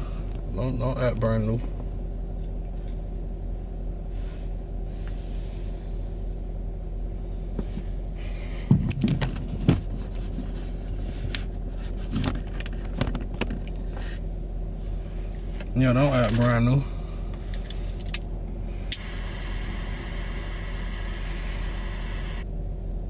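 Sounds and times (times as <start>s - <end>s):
low hum: 13.7s - 23.0s.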